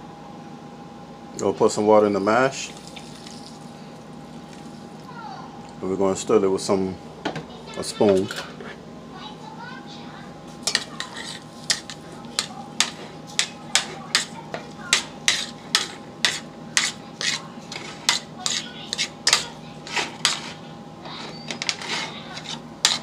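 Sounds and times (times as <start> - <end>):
spoon scraping a pan: 10.6 - 23.0.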